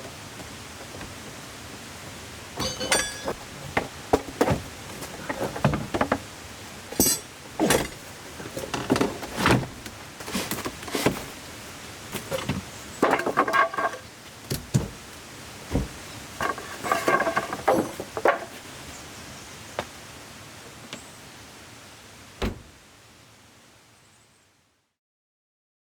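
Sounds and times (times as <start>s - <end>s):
metallic knocks and clanks: 2.6s - 6.2s, 6.9s - 8.0s.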